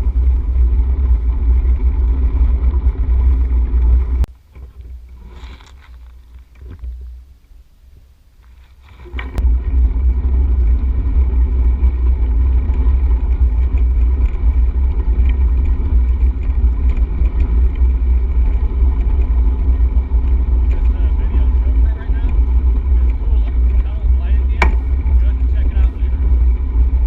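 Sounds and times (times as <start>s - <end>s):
wind buffeting microphone: 9.1s - 27.0s.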